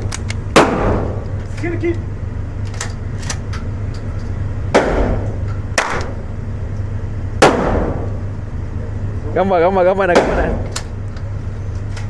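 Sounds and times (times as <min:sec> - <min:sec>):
gunshots with echo: 0:05.8 - 0:06.3, 0:07.4 - 0:08.1.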